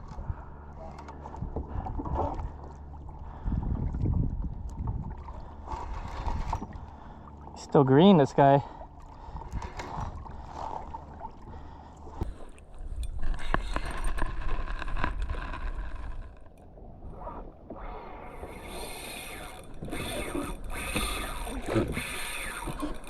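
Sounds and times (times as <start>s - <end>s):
wind rumbling on microphone: 0.0s - 7.2s
water lapping against hull: 0.0s - 23.0s.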